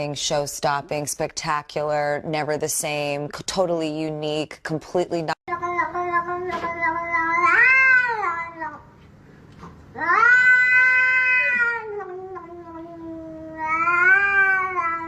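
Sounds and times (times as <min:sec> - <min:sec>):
cat yowling: 0:05.9 - 0:08.8, 0:10.0 - 0:15.0.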